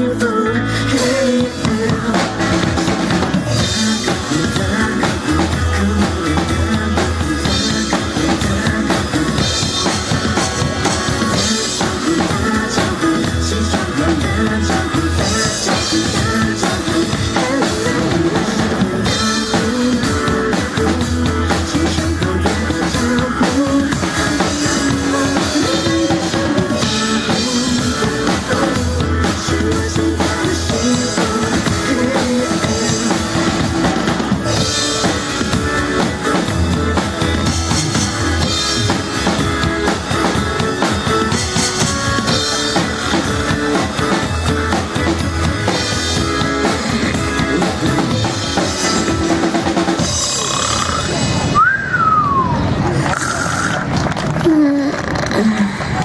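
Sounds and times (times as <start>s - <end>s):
instrumental pop band music: 0.0s - 56.0s.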